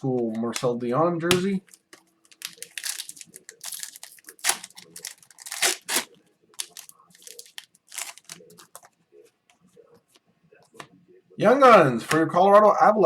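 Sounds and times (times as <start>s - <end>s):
foil wrapper crinkling and tearing: 1.7s - 8.8s.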